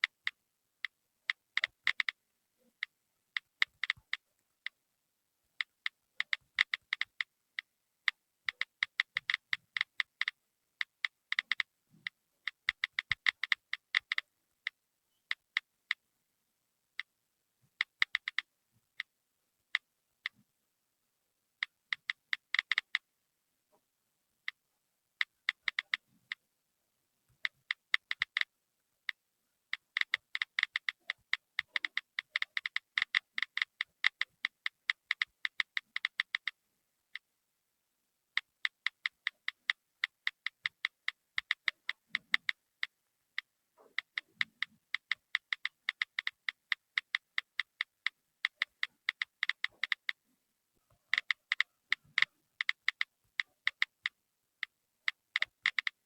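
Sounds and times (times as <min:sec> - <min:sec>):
touchscreen keyboard clicks: 0:00.0 - 0:02.2, 0:02.8 - 0:04.8, 0:05.6 - 0:07.7, 0:08.5 - 0:16.0, 0:17.8 - 0:18.5, 0:21.6 - 0:23.0, 0:25.2 - 0:26.4, 0:27.4 - 0:28.5, 0:29.1 - 0:36.6, 0:38.4 - 0:50.2, 0:50.9 - 0:56.0.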